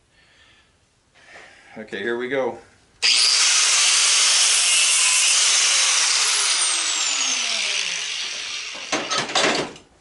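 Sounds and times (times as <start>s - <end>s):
grinder disc spinning down: 3.0s - 9.2s
angle grinder cutting metal: 3.0s - 9.3s.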